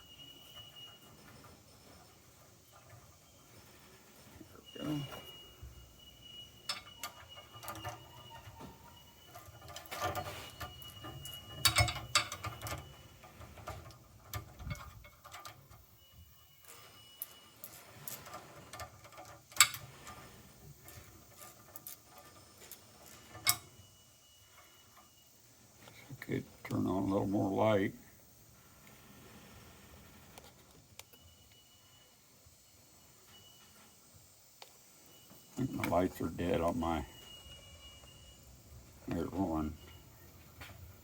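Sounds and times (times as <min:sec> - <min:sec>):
metal parts and tools clicking: 0:06.2 - 0:23.9.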